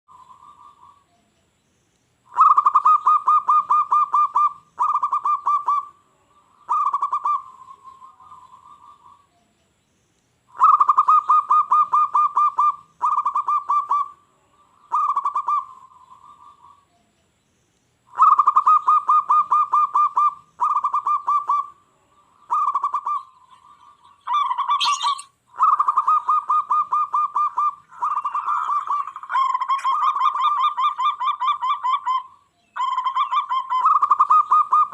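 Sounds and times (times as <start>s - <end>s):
dove cooing: 2.3s - 6.0s, 6.6s - 9.3s, 10.5s - 14.2s, 14.9s - 16.8s, 18.1s - 21.8s, 22.5s - 34.9s
higher bird call: 22.4s - 34.9s.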